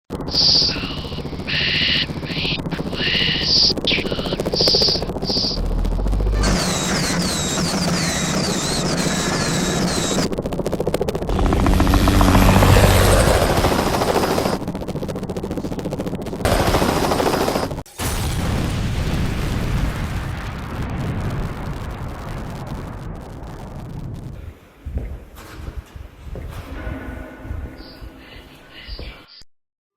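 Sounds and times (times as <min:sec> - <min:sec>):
hum with high warbling whistle: 0:00.2 - 0:10.3, 0:11.3 - 0:14.6, 0:26.9 - 0:28.9.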